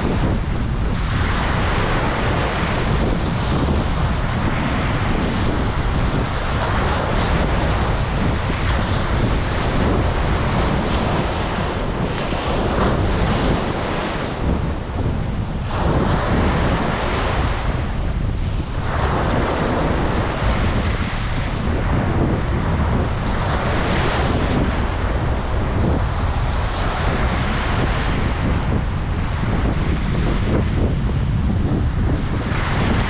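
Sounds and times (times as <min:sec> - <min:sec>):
ocean waves breaking: 0:00.0 - 0:28.1
wind buffeting microphone: 0:00.0 - 0:33.0.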